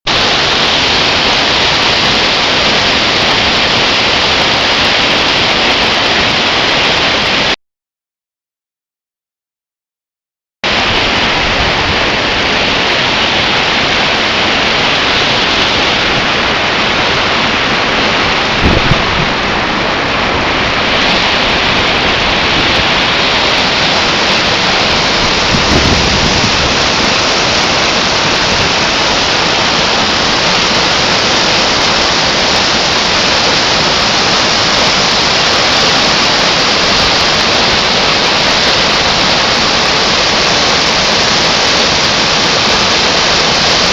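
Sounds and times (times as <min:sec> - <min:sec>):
waterfall roaring: 0:00.1 - 0:07.6, 0:10.7 - 0:43.9
low thumps: 0:18.5 - 0:19.5.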